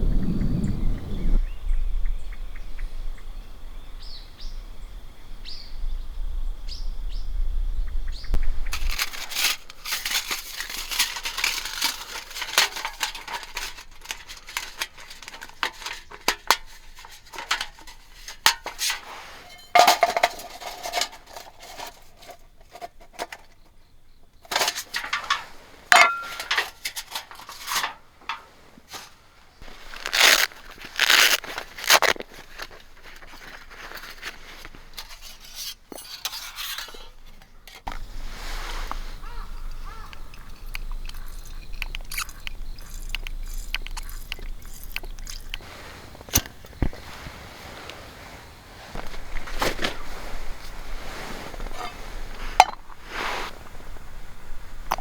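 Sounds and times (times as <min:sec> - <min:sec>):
low rumble: 0:00.0 - 0:03.2
gear rustling and clinking: 0:08.7 - 0:23.6, 0:24.4 - 0:48.1.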